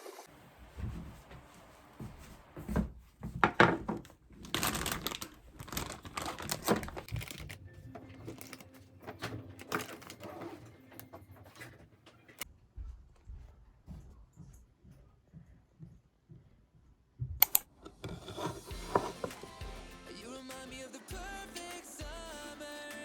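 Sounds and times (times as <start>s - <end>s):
rustling and crinkling: 0.3s - 16.4s.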